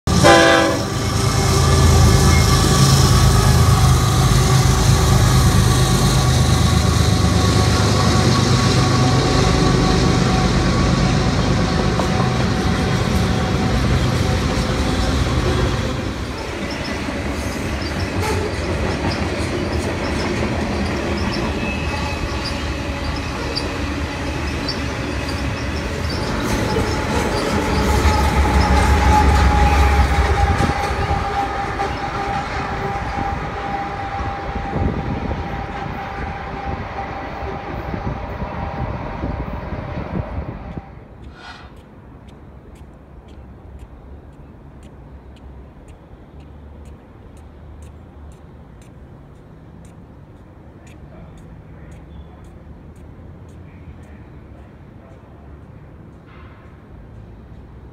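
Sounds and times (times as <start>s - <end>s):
diesel locomotive rumble: 0.0s - 57.9s
freight cars rolling: 0.2s - 57.9s
thin squealing tones: 16.2s - 33.7s.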